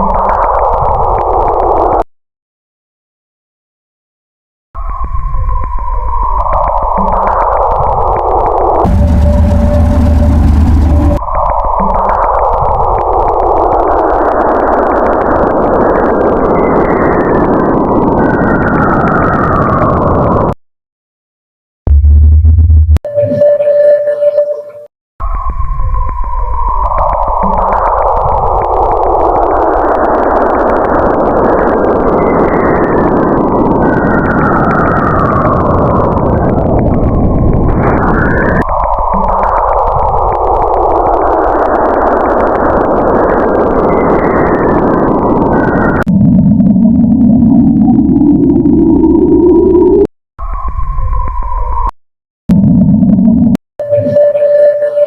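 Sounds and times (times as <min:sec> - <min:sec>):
loud steady rushing noise: 0:08.8 - 0:11.6.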